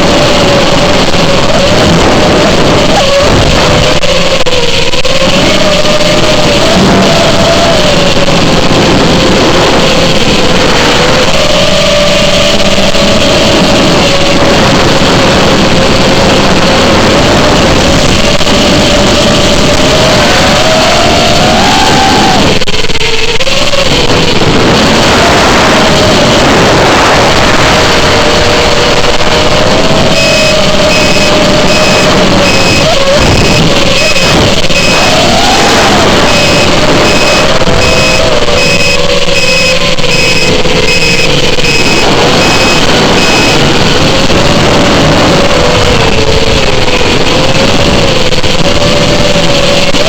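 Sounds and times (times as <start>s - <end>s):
drone motors whining: 0.0s - 50.0s
heavy rushing noise: 0.0s - 50.0s
high electronic beep: 29.9s - 43.8s.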